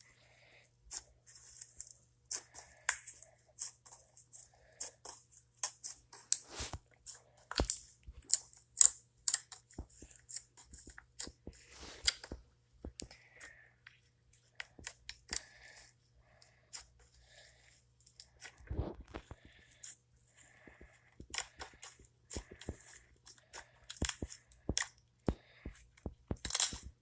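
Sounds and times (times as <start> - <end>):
crunching and crackling clicks: 18.1 - 27.0.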